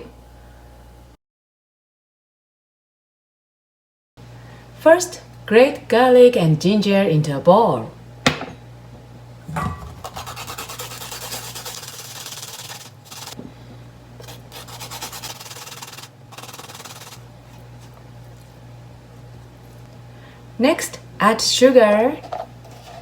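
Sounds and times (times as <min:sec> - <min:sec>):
grater rasping: 0:09.6 - 0:13.4, 0:14.2 - 0:18.6, 0:22.3 - 0:23.0.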